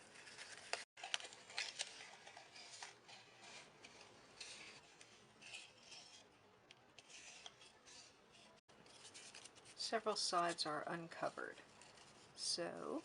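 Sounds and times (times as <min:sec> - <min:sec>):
paper and cardboard rustling: 0:00.1 - 0:06.2, 0:07.0 - 0:13.0.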